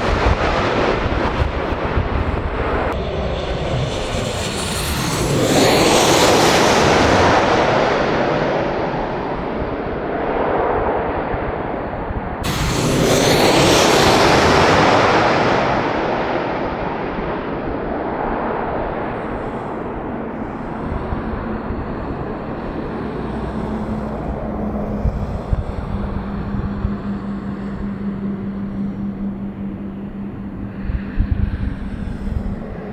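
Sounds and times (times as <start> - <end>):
jet airliner passing overhead: 0.0 - 32.9
steady low hum: 12.1 - 32.9.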